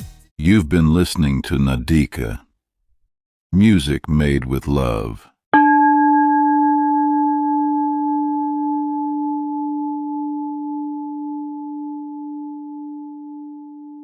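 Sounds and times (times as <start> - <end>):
bell-like chime ringing: 5.6 - 13.6.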